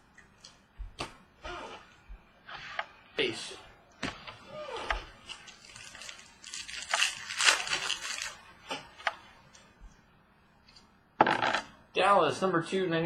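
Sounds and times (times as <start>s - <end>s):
card pack wrapper crinkling: 5.3s - 8.4s.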